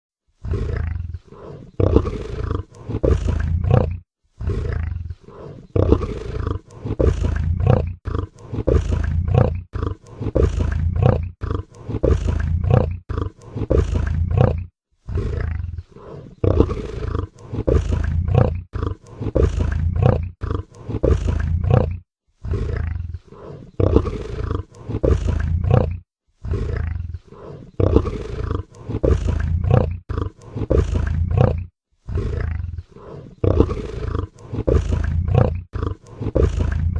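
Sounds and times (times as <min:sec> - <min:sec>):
big cat roaring and grunting: 0:00.4 - 0:36.9.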